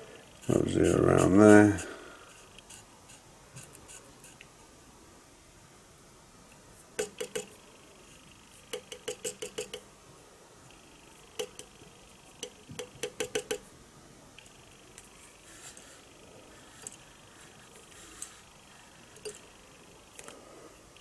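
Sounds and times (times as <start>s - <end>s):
faint high whine: 0.0s - 21.0s
sharp metallic clicks: 7.0s - 7.5s, 8.7s - 9.9s, 11.3s - 11.8s, 12.4s - 13.6s.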